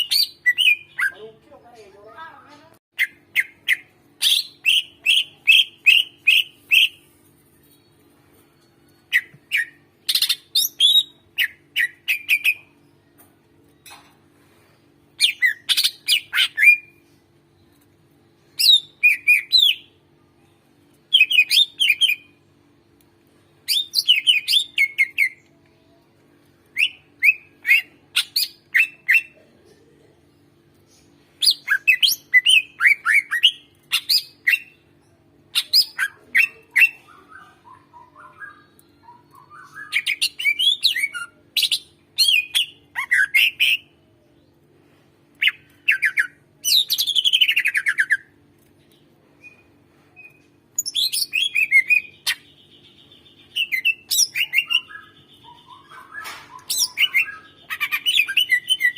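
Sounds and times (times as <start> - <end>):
bird chirping and whistling: 0.0 - 1.2, 3.0 - 7.0, 9.1 - 12.6, 18.6 - 19.9, 21.1 - 22.3, 23.7 - 25.4, 26.8 - 29.3, 31.4 - 34.8, 35.6 - 43.8, 49.4 - 58.9.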